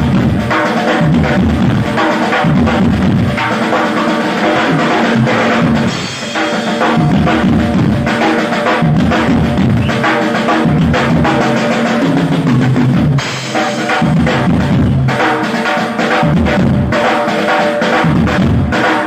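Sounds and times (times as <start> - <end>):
fast drum solo: 0.0 - 19.0
held pitched notes: 5.8 - 14.0.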